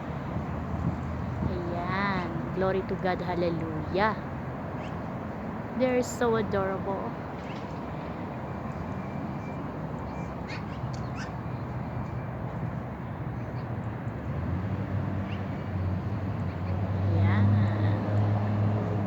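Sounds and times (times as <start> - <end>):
magpies calling: 10.1 - 11.5.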